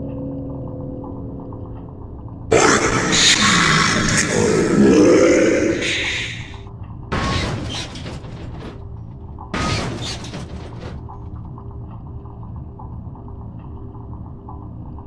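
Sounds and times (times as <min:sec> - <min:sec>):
steady low hum: 0:02.5 - 0:06.6.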